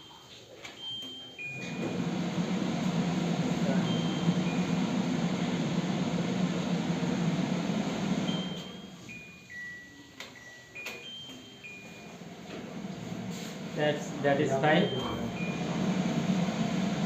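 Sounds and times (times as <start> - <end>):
blower fan humming: 1.4 - 9.4, 11.6 - 17.0
electronic beeps tune: 8.3 - 12.2, 14.7 - 15.8.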